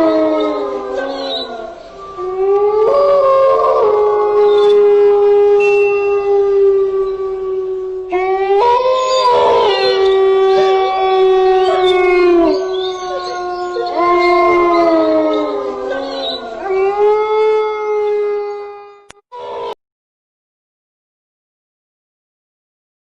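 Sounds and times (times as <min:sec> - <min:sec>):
wolves howling in chorus: 0:00.0 - 0:19.8.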